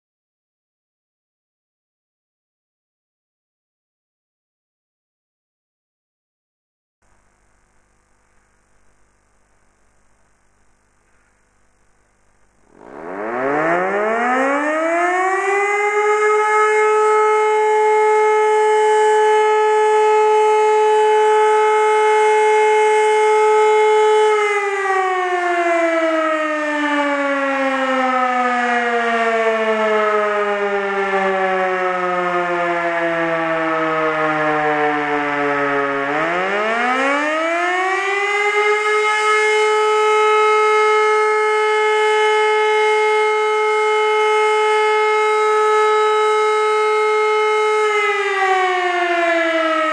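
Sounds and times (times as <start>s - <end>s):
motor siren wailing: 12.6s - 49.9s.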